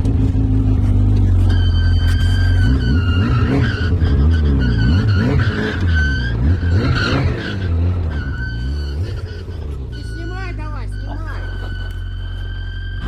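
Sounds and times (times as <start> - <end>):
off-road engine revving: 0.0 - 13.0
wheels spinning: 0.0 - 13.0.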